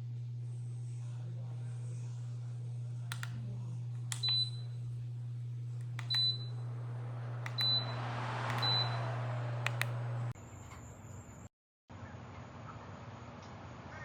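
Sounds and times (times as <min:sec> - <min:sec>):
fan low hum: 0:00.0 - 0:11.5
button clicks: 0:04.1 - 0:04.5, 0:05.8 - 0:06.5, 0:07.4 - 0:07.9, 0:08.5 - 0:09.0
short high beeps: 0:07.6 - 0:09.1.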